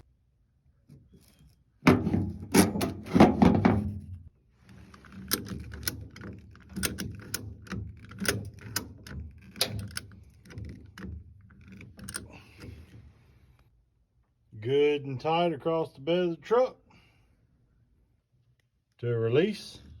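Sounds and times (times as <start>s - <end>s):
ratchet strap clicking: 4.7s - 12.8s.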